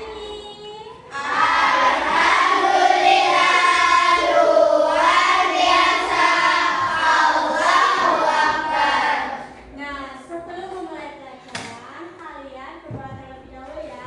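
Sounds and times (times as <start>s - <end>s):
children singing in unison: 1.1s - 9.6s.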